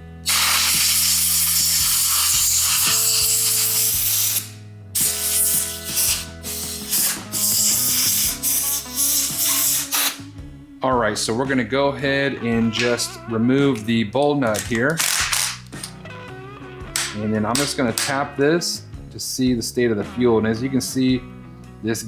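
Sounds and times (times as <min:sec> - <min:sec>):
compressed air blasts: 0:00.0 - 0:10.3
water spray hissing: 0:00.2 - 0:10.2.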